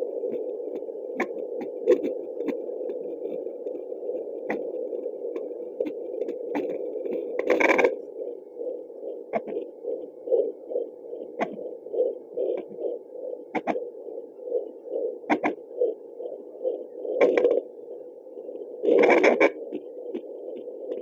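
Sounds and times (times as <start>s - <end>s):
fetal heartbeat whooshing pulses: 0.0s - 21.0s
muffled hum: 0.0s - 21.0s.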